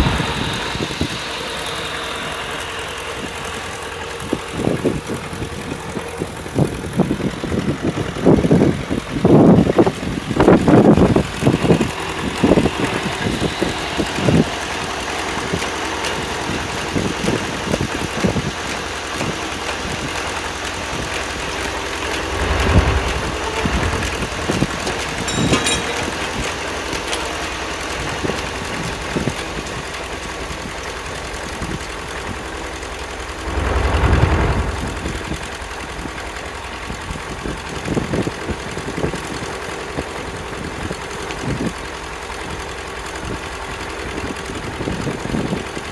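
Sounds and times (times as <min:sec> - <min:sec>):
low rumbles: 0:00.0 - 0:05.3, 0:20.8 - 0:26.4, 0:33.1 - 0:36.6
engine running steadily: 0:00.0 - 0:31.7.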